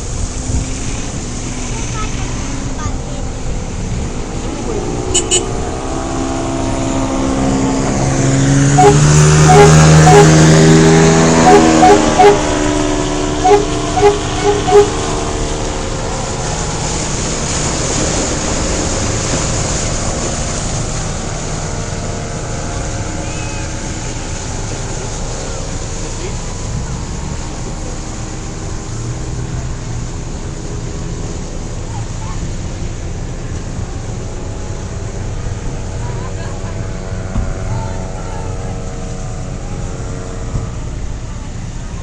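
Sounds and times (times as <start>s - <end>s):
off-road vehicle engine running: 0.0s - 42.0s
short sharp pitched blips: 8.8s - 10.5s, 11.4s - 12.5s, 13.4s - 15.0s.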